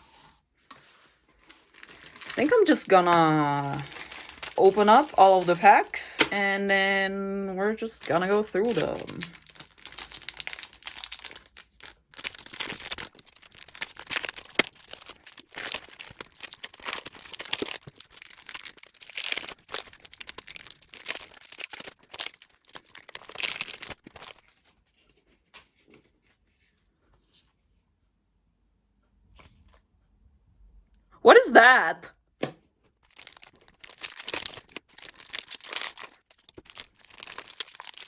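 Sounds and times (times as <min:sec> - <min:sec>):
wrappers tearing and crinkling: 0:01.4 - 0:06.4, 0:08.0 - 0:24.6, 0:33.1 - 0:38.0.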